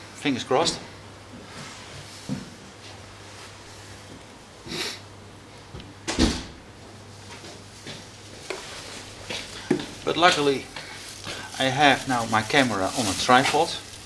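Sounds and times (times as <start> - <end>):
low steady hum: 0.0 - 13.2
short hiss: 3.4 - 5.2
knocks and clunks of handling: 7.3 - 10.0.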